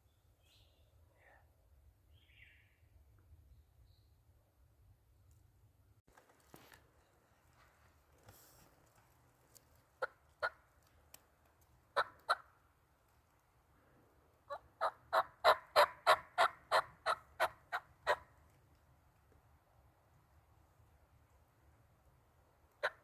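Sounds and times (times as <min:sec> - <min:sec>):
turkey yelping: 0:12.0 - 0:12.5, 0:14.5 - 0:18.3, 0:22.8 - 0:23.0.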